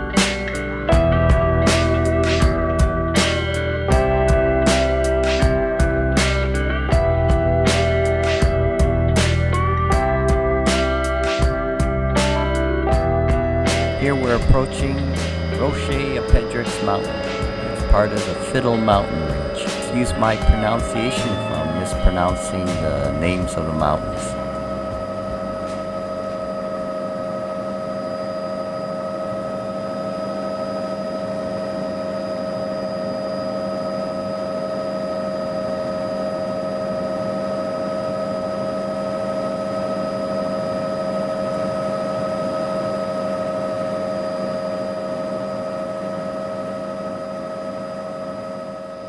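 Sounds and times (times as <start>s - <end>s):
steady whining tones: 0.0s - 49.0s
helicopter engine and rotor: 13.9s - 49.0s.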